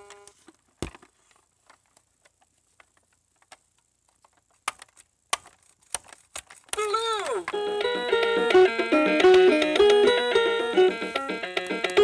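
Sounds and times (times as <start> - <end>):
plastic toy clicks and knocks: 1.7 - 7.6.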